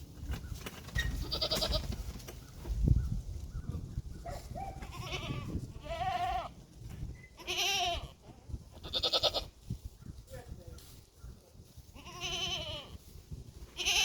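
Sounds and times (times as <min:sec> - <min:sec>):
goats bleating: 0:04.8 - 0:06.6, 0:07.4 - 0:09.5, 0:12.0 - 0:13.0, 0:13.7 - 0:14.0.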